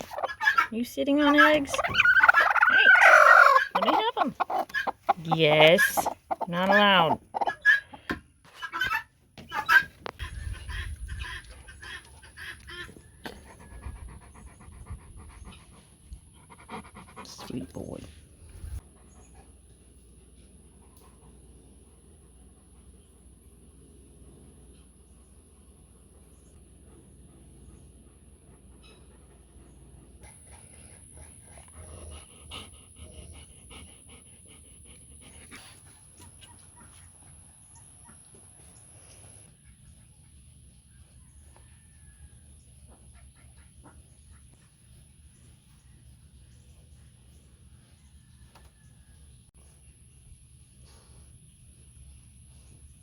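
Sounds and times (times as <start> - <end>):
turkey hen clucking: 0.0 - 13.0
dog panting: 11.4 - 17.6, 26.7 - 37.5.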